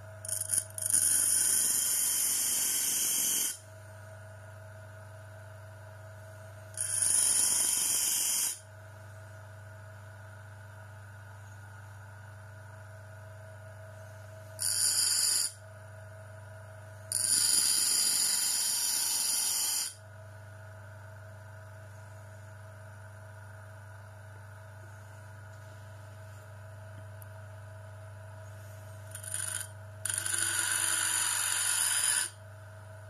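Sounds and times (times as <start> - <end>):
bench grinder motor humming: 14.6 - 15.6, 17.1 - 20.0, 29.1 - 32.4.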